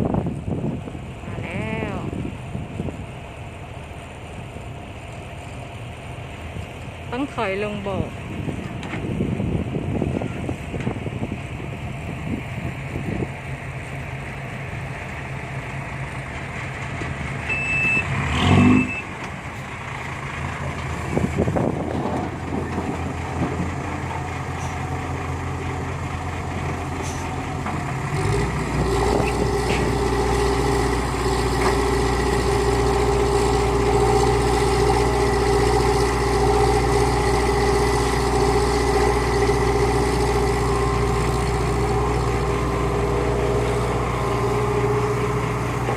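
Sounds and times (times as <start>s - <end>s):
heavy diesel engines running: 0.0s - 45.9s
short high beep: 17.5s - 19.1s.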